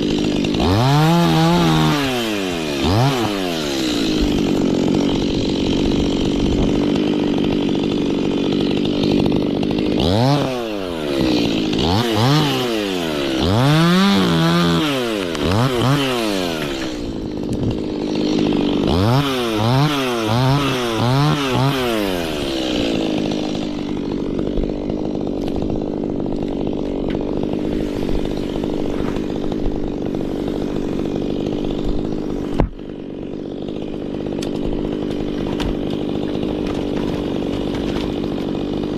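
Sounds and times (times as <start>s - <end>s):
chainsaw revving: 0.0s - 38.9s.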